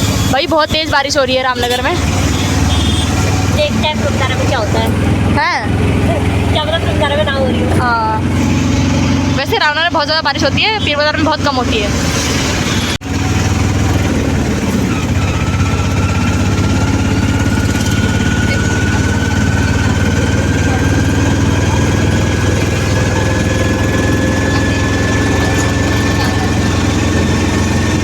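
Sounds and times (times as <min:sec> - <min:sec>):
small engine running: 0:00.0 - 0:12.0, 0:12.6 - 0:28.0.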